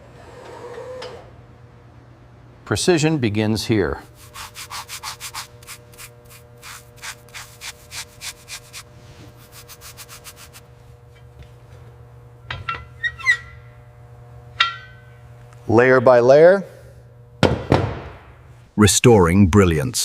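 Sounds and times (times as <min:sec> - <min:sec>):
hand sanding strokes: 0:04.0 - 0:10.8.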